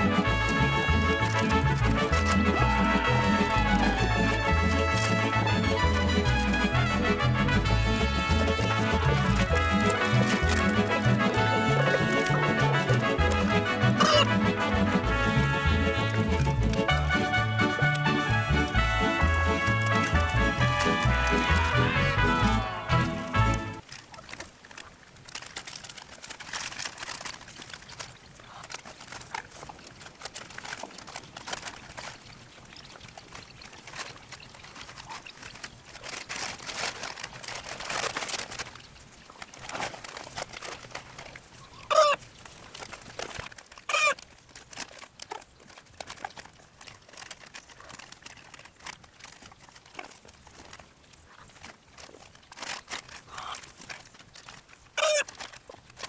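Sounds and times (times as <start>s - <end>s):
chickens clucking: 0.0s - 24.4s, 41.5s - 42.6s, 43.9s - 44.2s, 53.3s - 53.6s, 55.0s - 55.3s
scratchy rustling: 0.0s - 56.0s
loud pitched hen calls: 41.6s - 42.2s, 43.9s - 44.2s, 55.0s - 55.3s.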